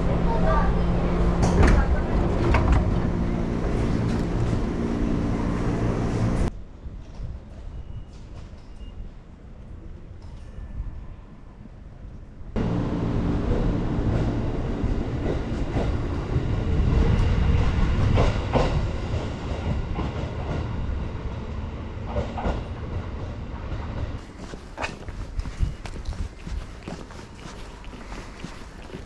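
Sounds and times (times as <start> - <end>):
train running on rails: 0.0 - 6.5, 12.6 - 24.3.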